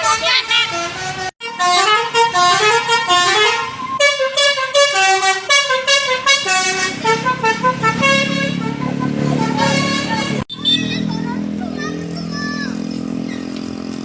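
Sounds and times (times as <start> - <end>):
multi-tone bus horn tune: 0.0 - 11.0.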